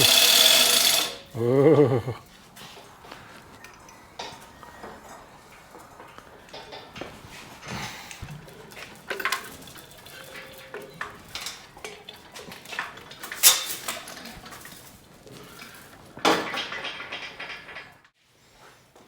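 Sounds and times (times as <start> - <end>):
metal parts clanking: 0.0 - 1.3, 6.5 - 18.1
sharp metal clangs: 0.0 - 1.3.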